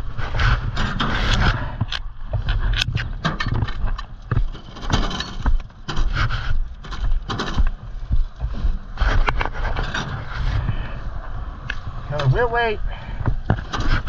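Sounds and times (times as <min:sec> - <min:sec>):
low rumble and hiss: 0:00.0 - 0:14.0.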